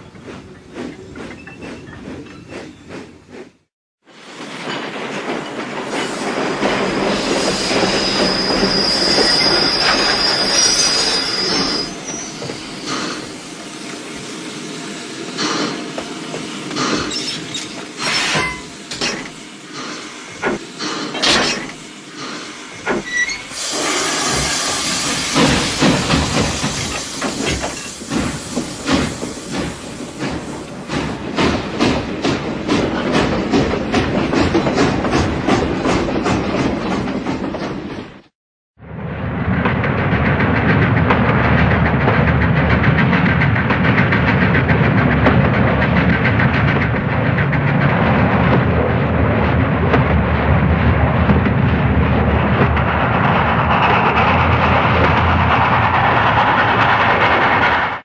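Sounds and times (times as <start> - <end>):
railway wheel squeal: 0.0 - 3.4, 4.3 - 16.0, 16.6 - 31.7
railway wagons clanking: 0.0 - 3.6, 4.2 - 14.3, 15.2 - 38.3, 39.3 - 58.0.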